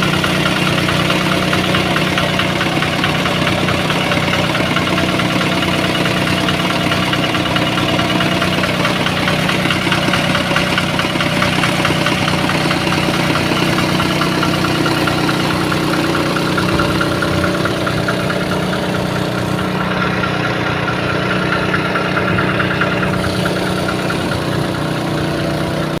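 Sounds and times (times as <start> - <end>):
drilling machine engine running: 0.0 - 26.0.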